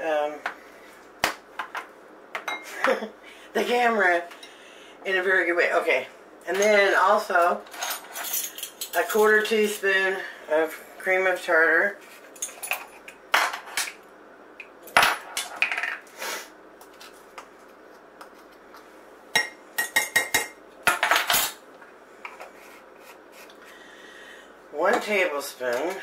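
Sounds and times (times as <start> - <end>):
utensils clinking and tapping: 7.7 - 9.2, 12.3 - 14.0, 19.4 - 21.6.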